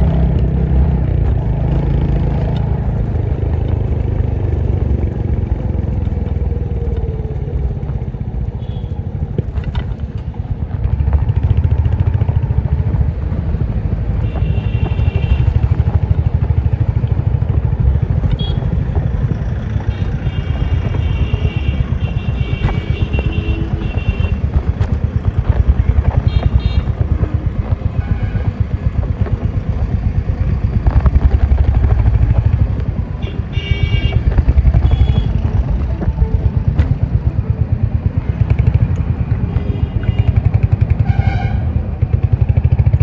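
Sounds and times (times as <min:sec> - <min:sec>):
traffic horns: 0:08.4 - 0:09.6, 0:14.0 - 0:16.2, 0:18.1 - 0:28.8, 0:32.9 - 0:37.2, 0:39.1 - 0:42.0
motorcycle engine thumping: 0:08.5 - 0:41.2.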